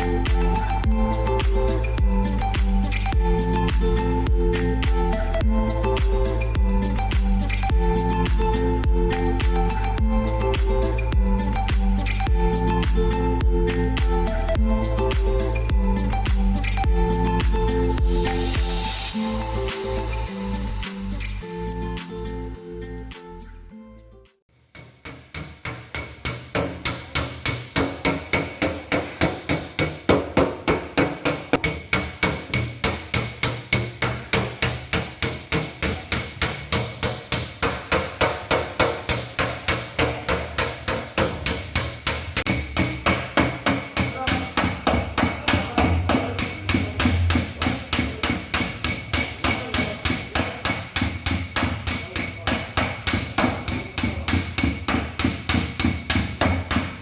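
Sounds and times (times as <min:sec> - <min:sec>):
hammer beating sheet metal: 0:24.7 - 0:57.0.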